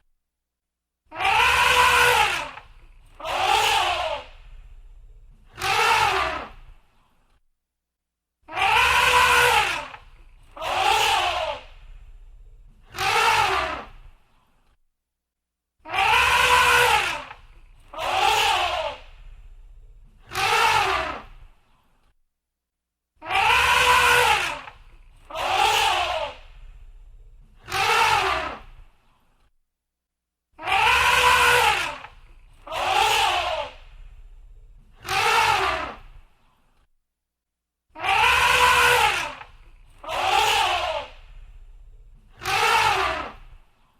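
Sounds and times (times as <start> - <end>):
elephant trumpeting: 1.1 - 6.6, 8.6 - 13.9, 15.9 - 21.3, 23.3 - 28.7, 30.7 - 36.2, 38.0 - 43.6.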